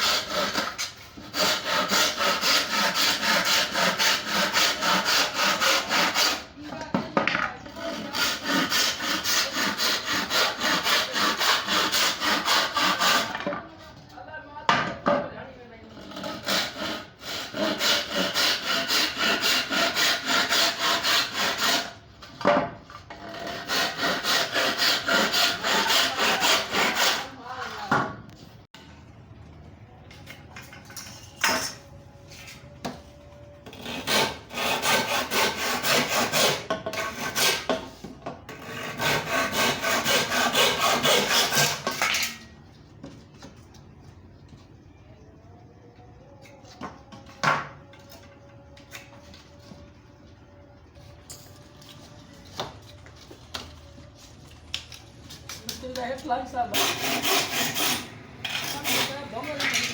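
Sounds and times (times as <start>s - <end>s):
hand saw cutting wood: 0.0s - 6.6s, 7.7s - 13.5s, 15.9s - 22.0s, 23.1s - 27.4s, 33.7s - 42.4s, 56.7s - 59.9s.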